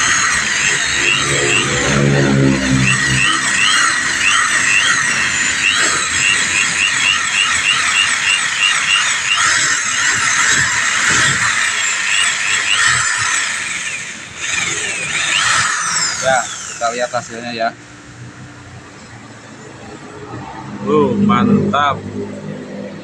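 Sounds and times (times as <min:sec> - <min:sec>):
power drill scraping metal: 0:00.0 - 0:17.6.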